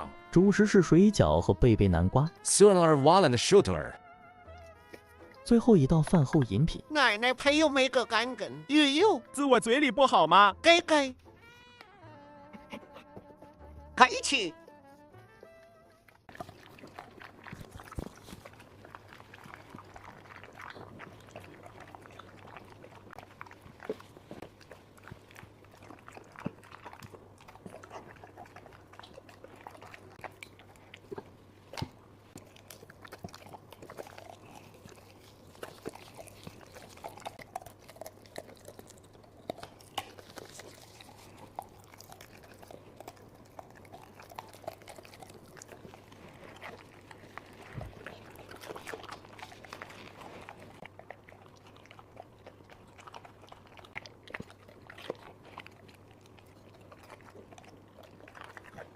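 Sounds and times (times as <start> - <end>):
dog chewing and crunching: 15.4 - 58.9.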